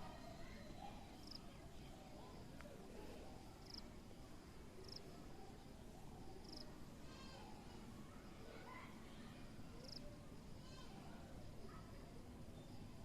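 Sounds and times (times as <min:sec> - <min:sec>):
low background hiss: 0:00.0 - 0:13.0
insect chirping: 0:00.6 - 0:01.4, 0:03.6 - 0:03.9, 0:04.8 - 0:05.1, 0:06.2 - 0:06.7, 0:09.8 - 0:10.0.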